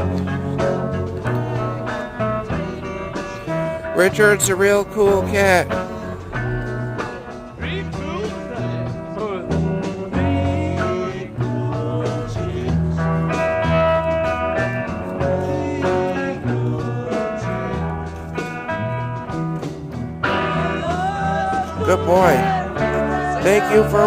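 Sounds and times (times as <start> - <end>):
bass line: 0.0 - 24.0
blues guitar music: 0.0 - 24.0
person singing: 15.2 - 18.0, 20.3 - 24.0.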